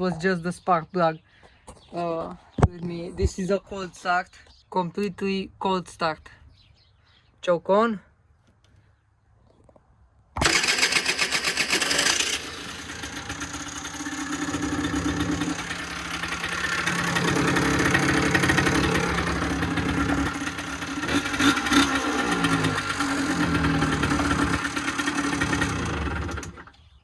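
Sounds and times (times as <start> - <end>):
two-stroke engine starting and idling: 10.4 - 27.0.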